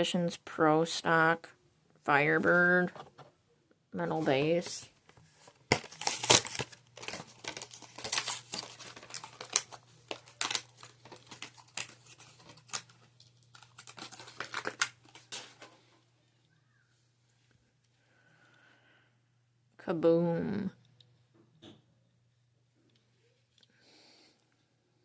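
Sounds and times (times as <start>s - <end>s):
packaging crinkling and tearing: 5.3s - 15.7s.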